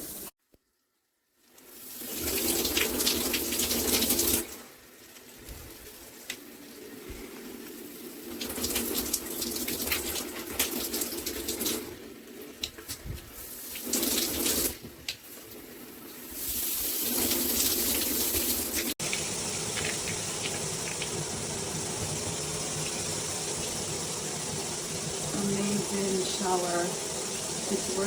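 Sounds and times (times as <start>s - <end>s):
water spraying from shower head: 0.0s - 0.3s, 1.6s - 7.0s, 7.6s - 28.0s
hissy spray: 16.2s - 28.0s.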